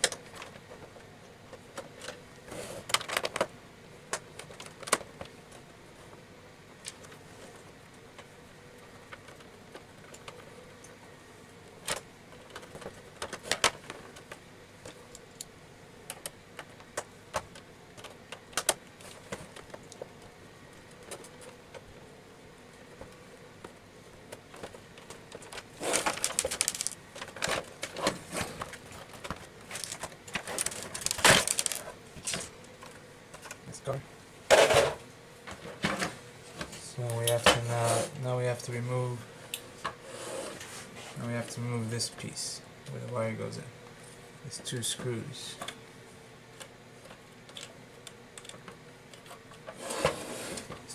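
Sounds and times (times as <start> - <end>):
plastic parts clicking and rattling: 24.5 - 33.8.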